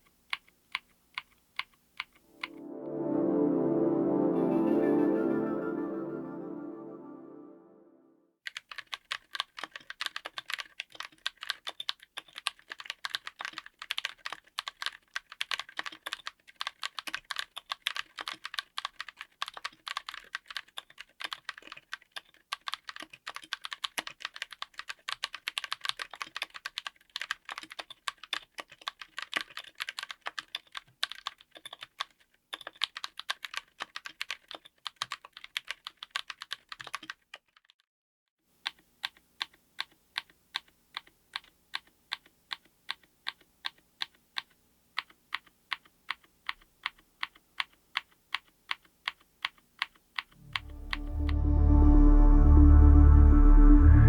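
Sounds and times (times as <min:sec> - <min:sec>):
typing on mechanical keyboard: 0:08.5 - 0:37.8, 0:38.6 - 0:51.1.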